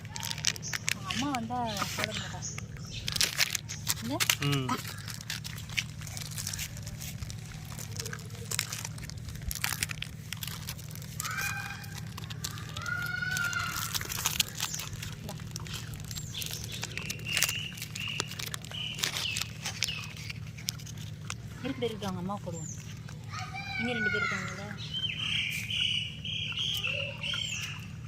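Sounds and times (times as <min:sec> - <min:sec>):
low hum: 0:00.0 - 0:28.0
puppies chewing and crunching: 0:00.0 - 0:28.0
high-pitched puppy calls: 0:11.1 - 0:20.2, 0:22.7 - 0:28.0.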